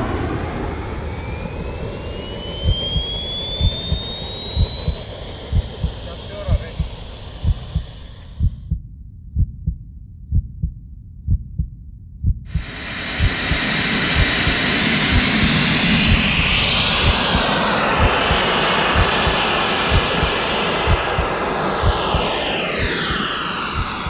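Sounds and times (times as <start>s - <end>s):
aircraft engine and propeller: 0.0s - 8.6s, 12.6s - 24.0s
low thumping: 2.5s - 16.4s.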